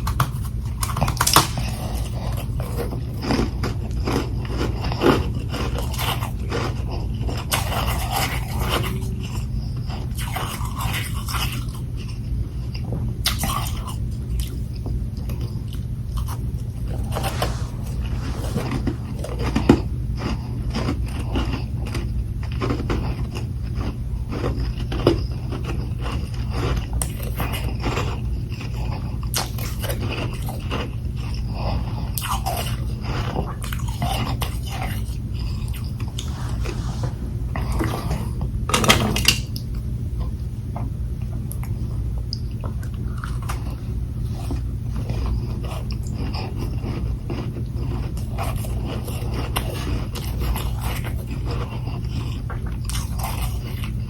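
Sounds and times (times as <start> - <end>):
chewing crunchy frozen ice: 0.0 - 36.7, 42.6 - 54.0
low steady hum: 14.1 - 22.4, 33.6 - 54.0.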